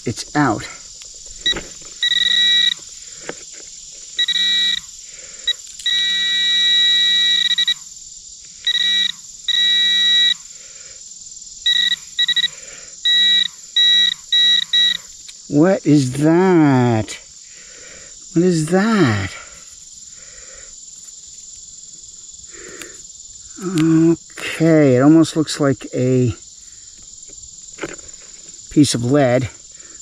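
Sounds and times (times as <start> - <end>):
high insect drone: 0.0 - 30.0
metal detector beeps: 1.4 - 2.9, 4.2 - 7.9, 8.6 - 10.4, 11.6 - 15.1.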